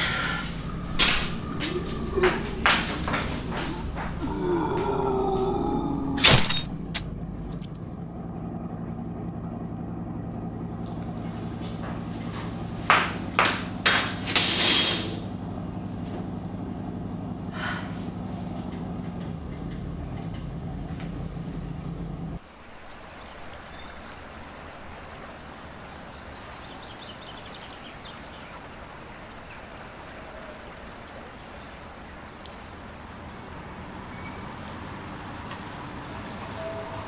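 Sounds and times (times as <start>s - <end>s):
steady low hum: 0.0s - 22.4s.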